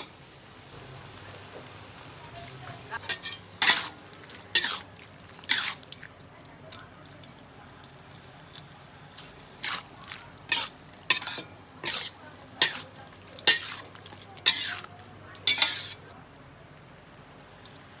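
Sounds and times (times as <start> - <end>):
spatula scraping food in pan: 3.0 - 6.0, 9.2 - 16.1.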